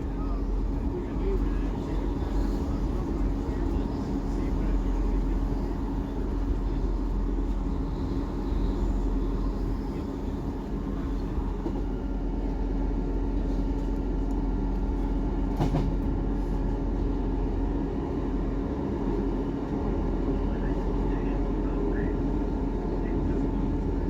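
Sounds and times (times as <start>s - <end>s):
diesel train engine drone: 0.0s - 24.0s.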